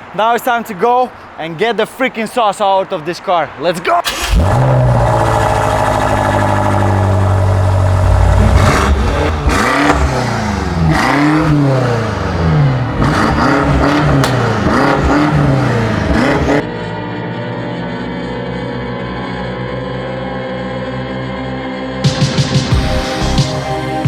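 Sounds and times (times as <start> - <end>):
car engine revving: 4.0 - 17.0.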